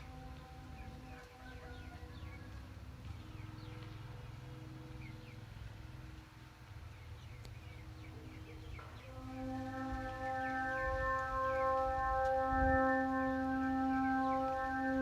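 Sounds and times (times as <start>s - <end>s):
bird chirps: 0.0s - 5.8s, 6.8s - 11.9s
kite flutes droning: 0.0s - 6.1s, 8.1s - 15.0s
low wind rumble: 0.0s - 15.0s.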